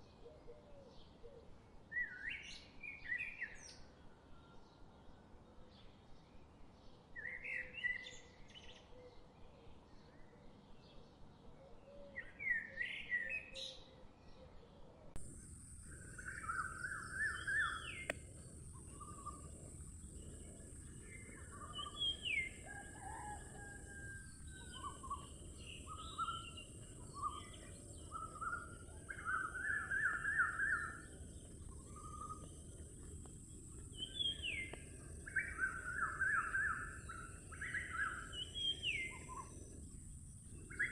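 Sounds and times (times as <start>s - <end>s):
steady high hiss: 15.2s - 22.8s, 23.8s - 40.9s
birds chirping and trilling: 15.8s - 40.9s.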